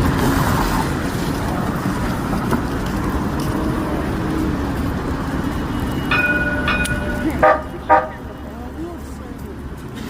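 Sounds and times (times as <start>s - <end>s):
street traffic rumble: 0.0s - 10.0s
streetcar horn chord: 6.1s - 8.4s.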